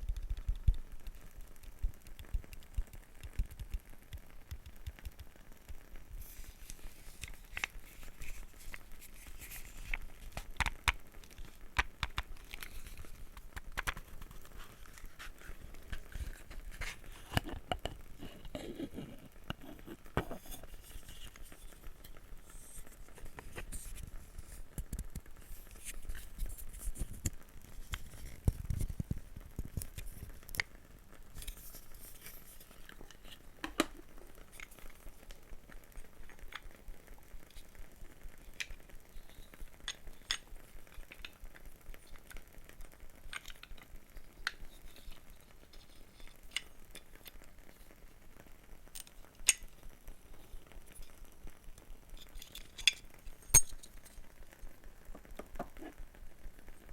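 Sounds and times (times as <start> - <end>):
scratching and scraping: 12.1 - 24.6.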